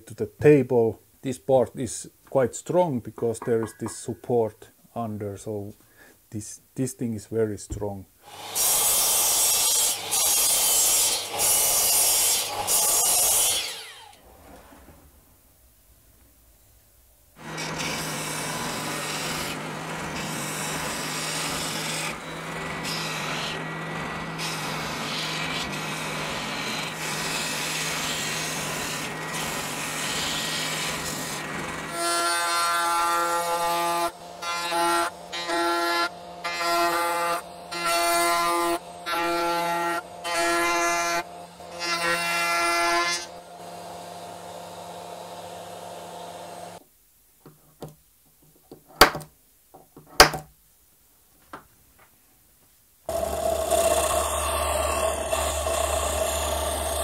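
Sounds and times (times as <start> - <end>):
power tool running: 8.3 - 14.2, 17.4 - 46.8, 53.1 - 57.0
high-pitched whining power tool: 53.1 - 57.0.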